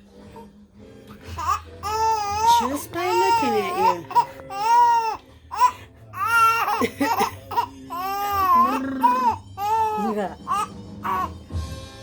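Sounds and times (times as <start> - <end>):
baby squealing: 1.4 - 11.4.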